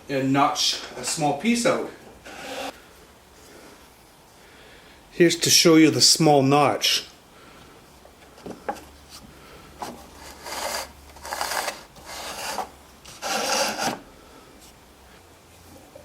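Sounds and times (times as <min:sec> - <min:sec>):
wood scraping: 0:02.2 - 0:02.8, 0:08.4 - 0:14.8
wooden jig rubbing against sander: 0:02.2 - 0:02.8, 0:10.2 - 0:14.0.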